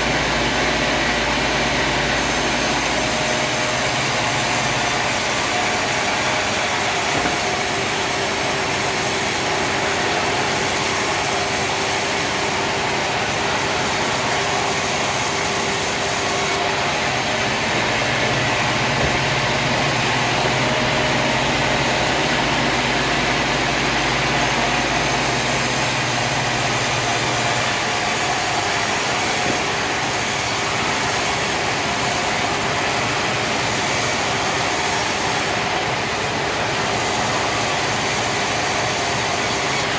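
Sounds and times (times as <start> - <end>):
saw noise: 0.0 - 39.9
sawmill engine noise: 0.0 - 39.9.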